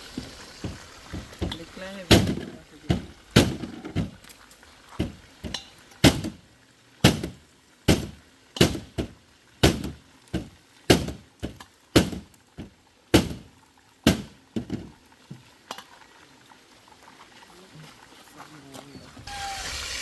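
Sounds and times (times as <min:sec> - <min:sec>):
sharp heavy knocks: 0:00.6 - 0:04.2, 0:05.0 - 0:06.4, 0:07.0 - 0:14.9.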